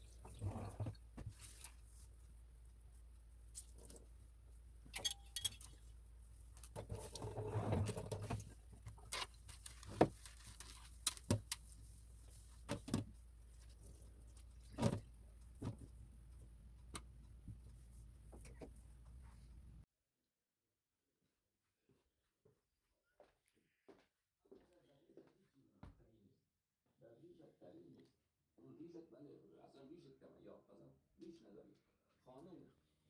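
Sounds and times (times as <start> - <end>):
rustling: 5.7 - 16.4.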